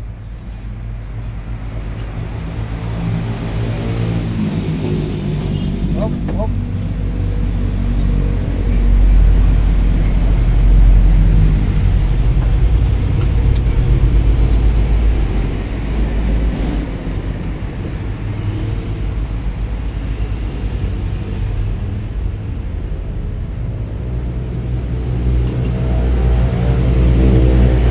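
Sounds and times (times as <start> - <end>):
diesel truck engine running: 0.0 - 20.4
faint high squeal: 12.8 - 15.0.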